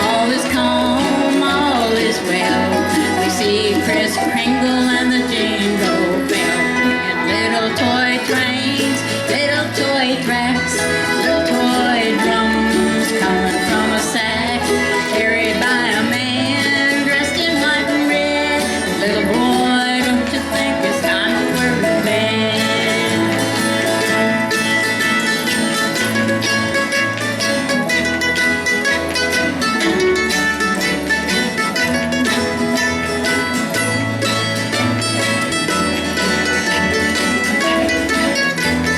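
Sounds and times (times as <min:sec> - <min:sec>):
acoustic bluegrass band playing: 0:00.0 - 0:38.9.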